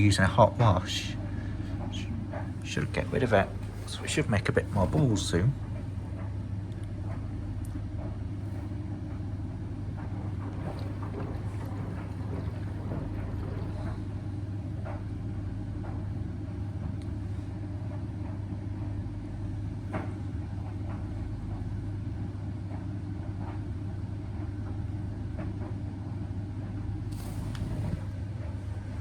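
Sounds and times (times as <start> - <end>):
washing machine drum humming: 0.0 - 29.0
soft swishes of laundry: 0.1 - 18.0, 27.0 - 29.0.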